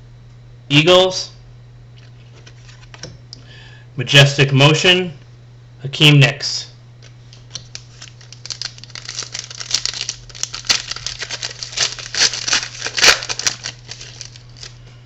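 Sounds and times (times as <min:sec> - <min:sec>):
trading cards flipping and rustling: 0:07.0 - 0:14.8.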